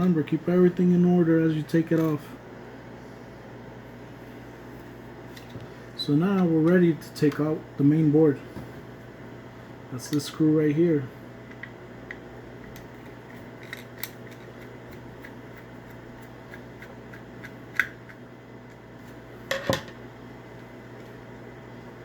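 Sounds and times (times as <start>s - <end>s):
room hum: 0.0s - 22.0s
small parts clicking: 12.8s - 15.4s.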